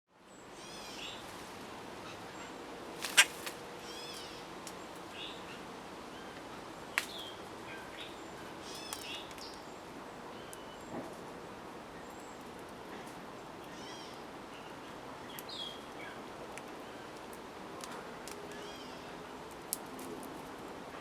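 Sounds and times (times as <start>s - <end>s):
small bird chirping: 3.0s - 4.4s.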